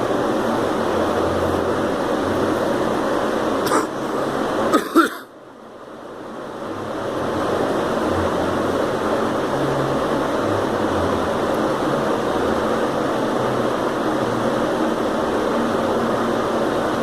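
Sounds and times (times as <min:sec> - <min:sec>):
steady background noise: 0:00.0 - 0:17.0
girl coughing: 0:03.6 - 0:04.0, 0:04.7 - 0:05.3.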